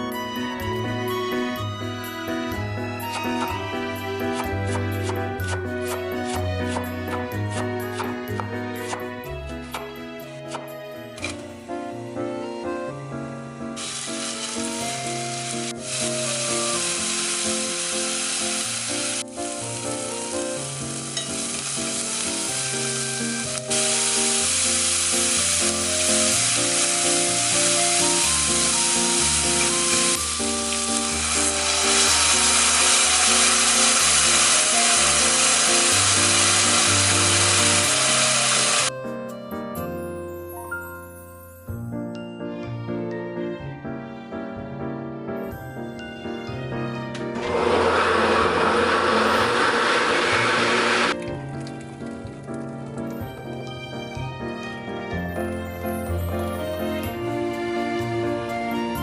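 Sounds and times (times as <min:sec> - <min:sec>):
soft background music: 0:00.0 - 0:48.2, 0:49.4 - 0:59.0
food sizzling in oil: 0:13.8 - 0:38.9, 0:47.4 - 0:51.2.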